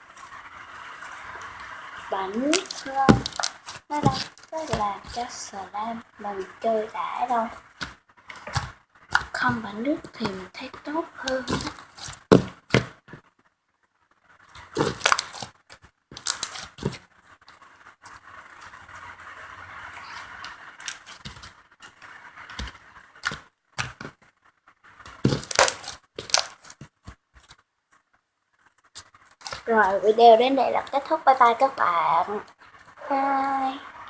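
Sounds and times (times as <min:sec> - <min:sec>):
slime squeezed by hand: 0:14.6 - 0:15.6, 0:25.2 - 0:26.7.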